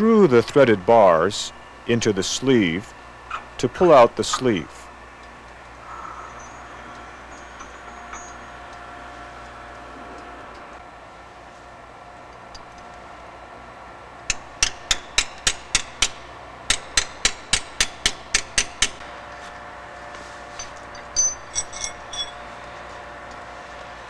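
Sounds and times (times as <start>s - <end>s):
light metallic clinks: 20.6s - 22.4s.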